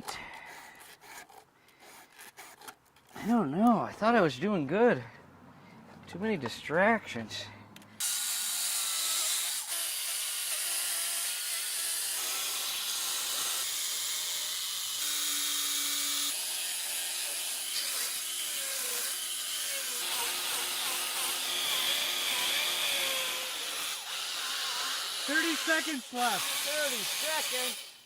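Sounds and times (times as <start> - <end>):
chainsaw cutting wood: 8.0 - 28.0.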